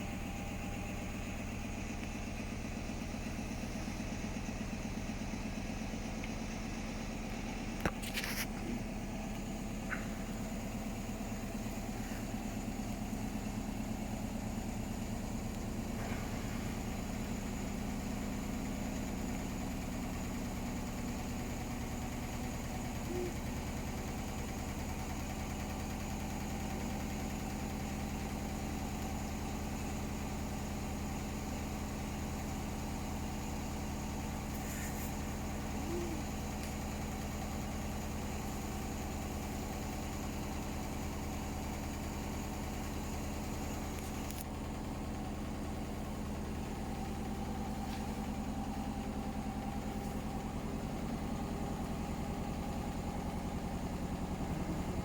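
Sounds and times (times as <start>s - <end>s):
washing machine spinning: 9.2s - 55.0s.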